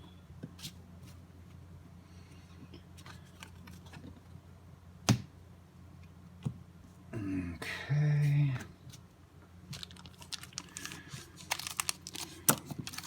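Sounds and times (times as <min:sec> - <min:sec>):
low electrical hum: 0:00.0 - 0:13.0
cards clicking and rustling: 0:09.7 - 0:13.0.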